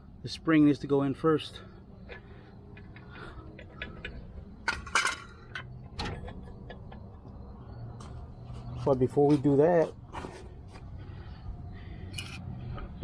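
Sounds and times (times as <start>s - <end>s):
metal hardware and tools clinking: 2.1s - 6.9s, 12.1s - 12.5s.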